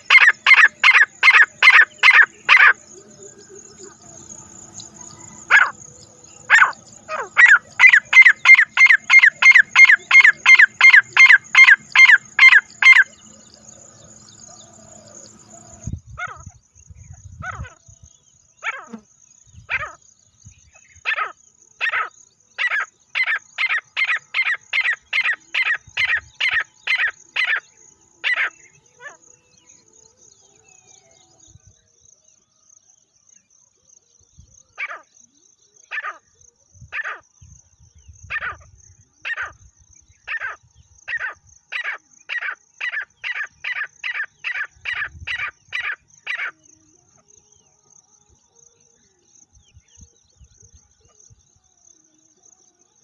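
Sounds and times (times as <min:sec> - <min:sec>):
bird harsh call series: 0:00.0 - 0:15.6, 0:21.1 - 0:29.2.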